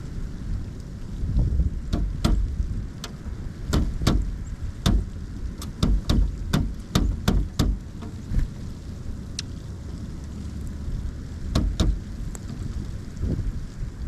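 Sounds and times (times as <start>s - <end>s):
wind rumble on microphone: 0.0s - 14.0s
woodpecker pecking at wood: 1.9s - 8.2s, 11.5s - 12.0s.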